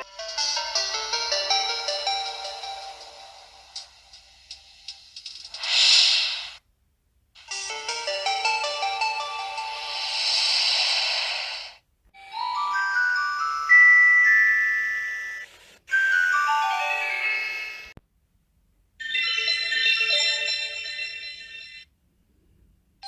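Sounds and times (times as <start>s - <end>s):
mobile phone chime melodies: 0.0s - 3.4s, 12.2s - 17.9s, 19.0s - 21.8s.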